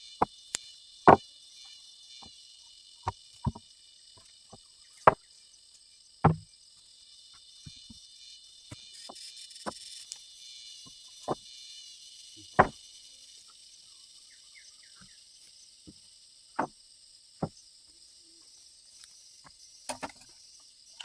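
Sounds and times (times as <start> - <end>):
short sharp knocks: 6.2 - 6.5.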